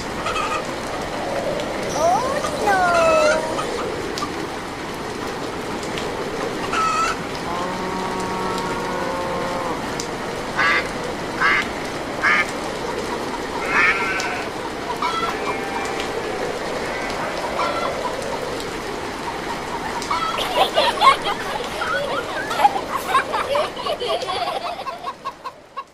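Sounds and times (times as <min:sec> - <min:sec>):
animal calls: 0:00.0 - 0:04.6, 0:13.3 - 0:25.0
steady hissing background: 0:00.0 - 0:25.9.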